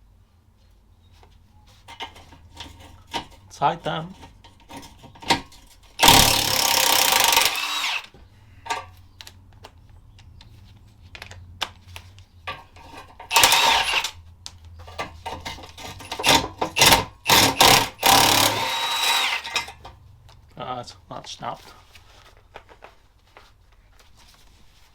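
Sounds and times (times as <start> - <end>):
clicks and knocks of metal work: 1.8 - 8.0, 8.6 - 9.0, 12.5 - 14.1, 14.8 - 20.0
impact driver bursts: 5.2 - 8.9, 13.2 - 14.2, 15.8 - 19.8.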